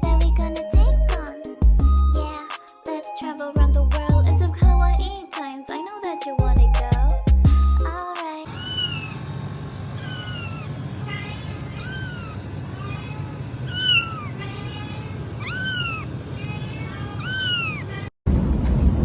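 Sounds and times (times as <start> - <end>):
kitten meowing: 8.5 - 9.2, 10.0 - 10.7, 11.7 - 12.4, 13.6 - 14.4, 15.4 - 16.1, 17.2 - 18.0.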